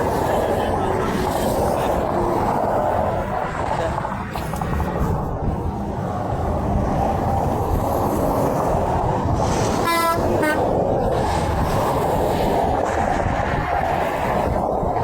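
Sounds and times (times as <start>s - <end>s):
heavy highway traffic rumble: 0.0s - 15.0s
truck air horn blast: 9.8s - 10.7s.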